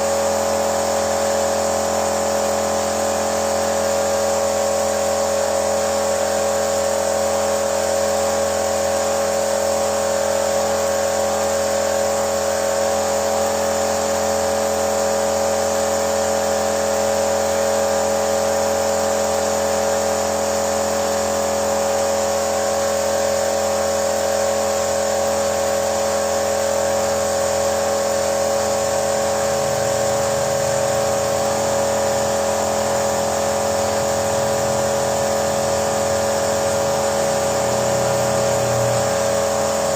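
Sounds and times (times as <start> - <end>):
high whine: 27.2 - 39.9.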